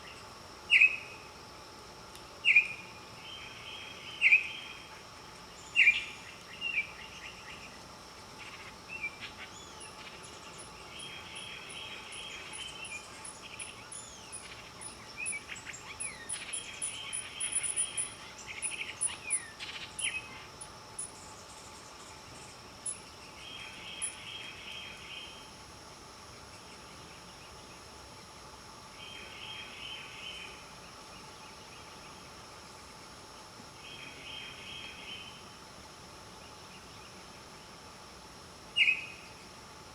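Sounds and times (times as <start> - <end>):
faint very high ticks: 2.1 - 2.8, 5.8 - 6.6, 34.7 - 35.2.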